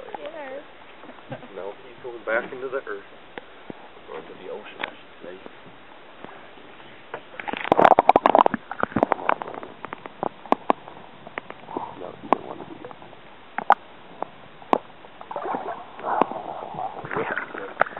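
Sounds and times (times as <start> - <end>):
sharp clicks and pops: 7.2 - 16.4
water splashing and bubbling: 7.2 - 17.9.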